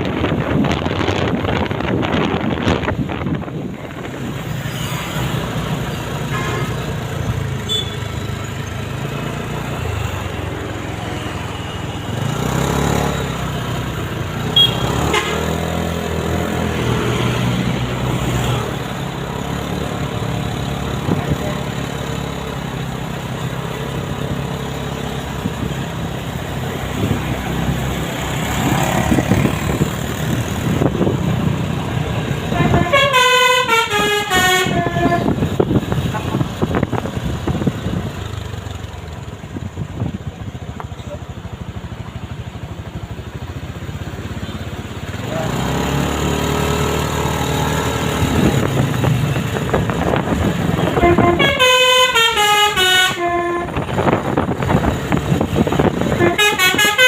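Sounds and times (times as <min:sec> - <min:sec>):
vehicle engines passing: 0:00.0 - 0:57.0
horn toots: 0:06.2 - 0:06.9, 0:07.6 - 0:08.1, 0:14.4 - 0:15.8, 0:32.4 - 0:36.3, 0:50.6 - 0:54.2, 0:55.9 - 0:57.0.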